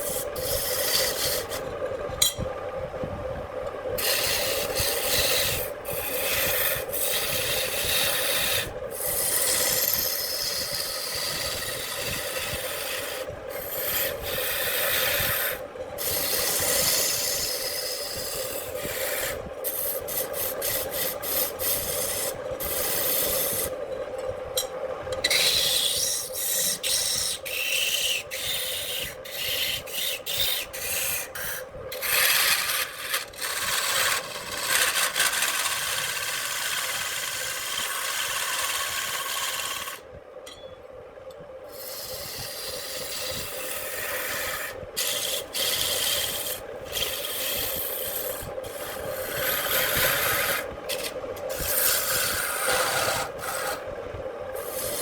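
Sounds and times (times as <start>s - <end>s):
lathe tool scraping wood: 0.0s - 1.7s, 4.0s - 23.8s, 25.3s - 40.0s, 41.8s - 53.8s, 54.6s - 55.0s
lathe motor hum: 25.3s - 40.1s, 41.8s - 53.9s.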